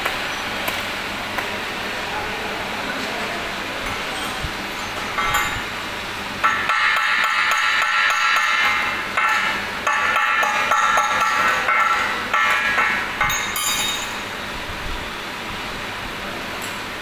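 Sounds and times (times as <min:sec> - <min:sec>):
hammer striking metal: 0:06.4 - 0:14.2.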